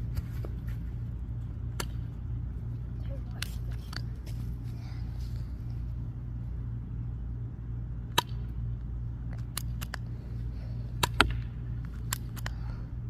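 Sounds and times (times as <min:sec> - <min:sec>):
steady low rumble: 0:00.0 - 0:13.0
airsoft gun snaps: 0:09.4 - 0:10.0, 0:11.0 - 0:12.6.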